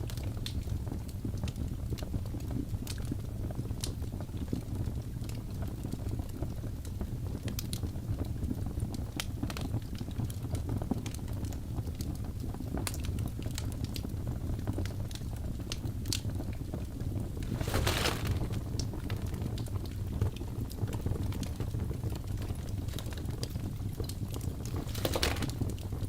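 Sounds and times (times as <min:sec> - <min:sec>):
fire crackling and popping: 0:00.0 - 0:26.0
fire rumbling: 0:00.1 - 0:26.0.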